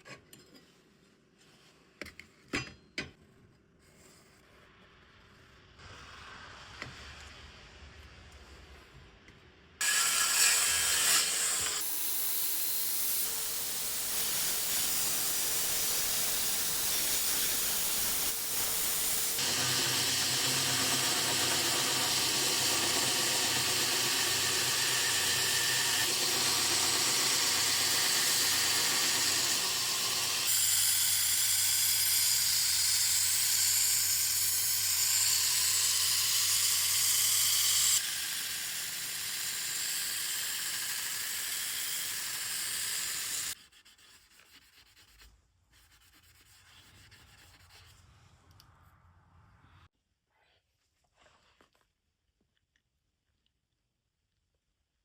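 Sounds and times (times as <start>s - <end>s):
electric grinder hissing against steel: 9.8s - 43.6s.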